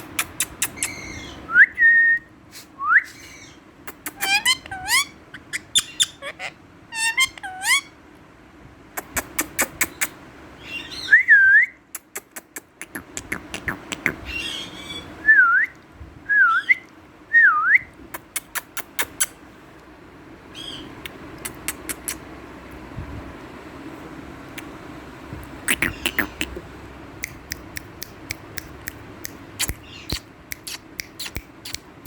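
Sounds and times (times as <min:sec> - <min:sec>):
parakeet beak clicking: 0:00.0 - 0:01.0, 0:03.9 - 0:04.6, 0:09.0 - 0:10.2, 0:18.2 - 0:19.4, 0:21.0 - 0:22.2, 0:25.4 - 0:26.6, 0:27.2 - 0:31.9
parakeet chattering: 0:00.0 - 0:01.4, 0:03.4 - 0:07.9, 0:09.0 - 0:10.9, 0:12.0 - 0:15.1, 0:18.2 - 0:19.4, 0:20.6 - 0:22.3, 0:25.4 - 0:32.0
parakeet whistled calls: 0:00.6 - 0:01.4, 0:04.2 - 0:07.9, 0:10.6 - 0:11.3, 0:14.3 - 0:15.2, 0:25.7 - 0:26.5.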